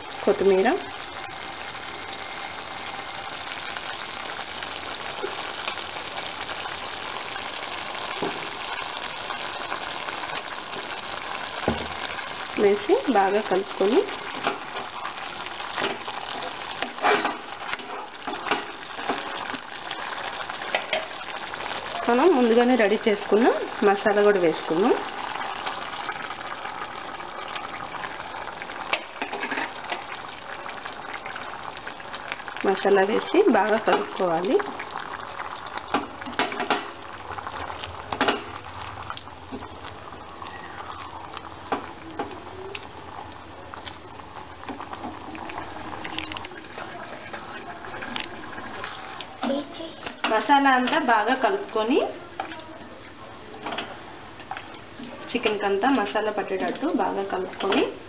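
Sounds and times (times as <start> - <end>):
chicken sizzling in a pan: 0.0 - 58.0
spatula scraping a pan: 16.8 - 18.1.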